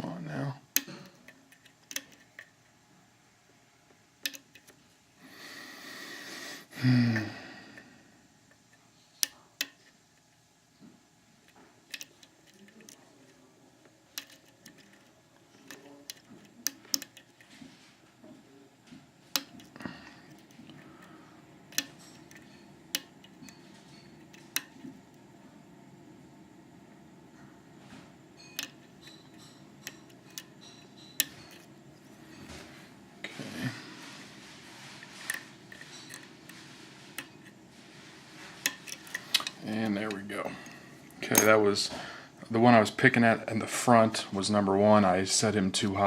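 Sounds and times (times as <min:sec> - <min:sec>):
lock picks clicking metal: 0:00.8 - 0:02.5, 0:04.2 - 0:04.7, 0:11.5 - 0:13.0, 0:14.1 - 0:17.4, 0:28.4 - 0:31.7.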